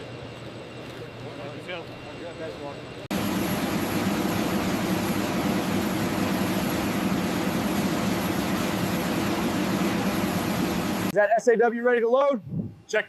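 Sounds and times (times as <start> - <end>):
loud mechanical drone: 3.1 - 11.1.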